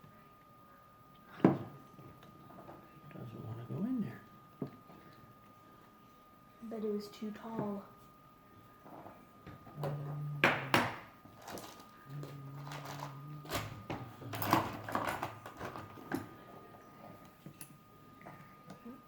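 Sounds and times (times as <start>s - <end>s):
low hum: 0.0s - 14.9s.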